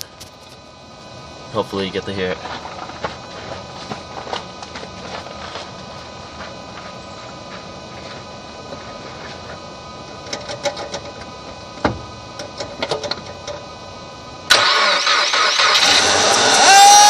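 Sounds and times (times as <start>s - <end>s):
car engine starting with squeal: 14.5s - 17.0s.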